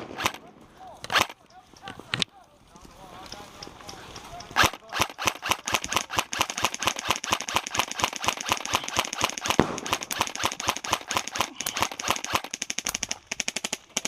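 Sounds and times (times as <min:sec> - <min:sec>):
airsoft guns firing: 0:00.0 - 0:02.2, 0:03.4 - 0:14.0
loud crack: 0:04.2 - 0:13.7.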